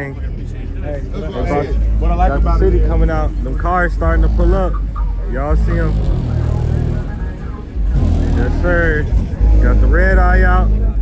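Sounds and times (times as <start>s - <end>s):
car engine rumble: 0.0s - 11.0s.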